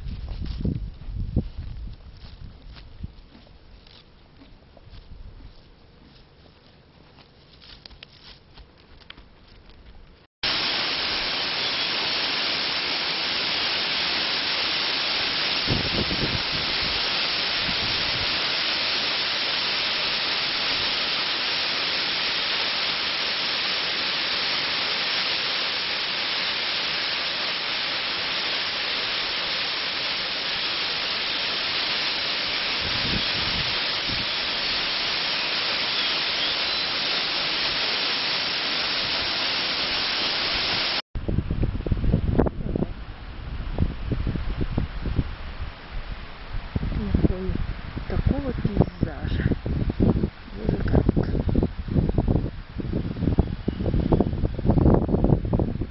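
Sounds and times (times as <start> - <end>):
waterfall rushing: 10.4 - 41.0.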